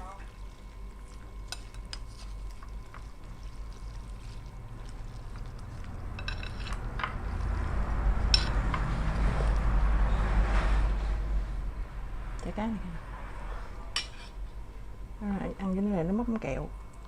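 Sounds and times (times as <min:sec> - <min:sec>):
utensils clinking in a bowl: 0:01.1 - 0:07.4, 0:08.2 - 0:08.9
low rumble: 0:04.5 - 0:13.9.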